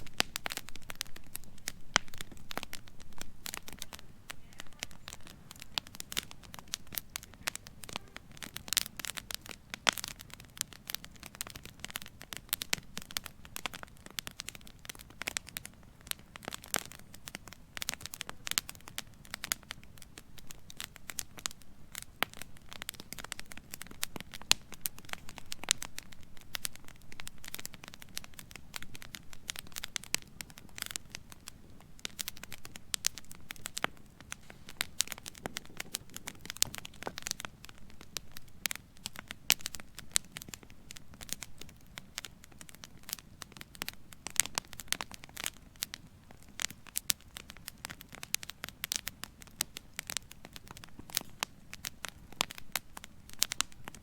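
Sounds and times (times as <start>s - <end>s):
faint hiss: 0.0s - 10.8s, 12.8s - 42.6s
raindrops pattering: 0.0s - 54.0s.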